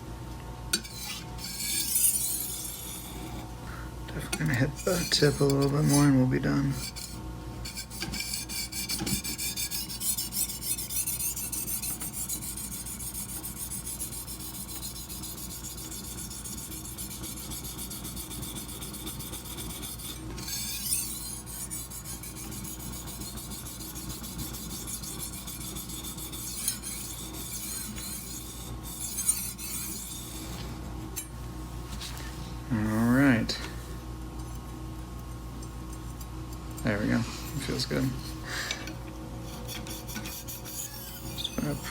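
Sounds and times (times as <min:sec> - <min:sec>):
knife scraping on sharpening stone: 0:00.8 - 0:03.4, 0:04.8 - 0:06.1, 0:06.7 - 0:30.6, 0:39.4 - 0:41.9.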